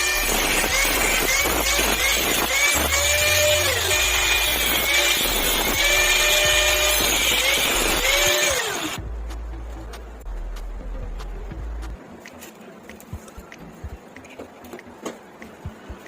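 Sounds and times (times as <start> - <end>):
angle grinder cutting steel: 0.0 - 9.0.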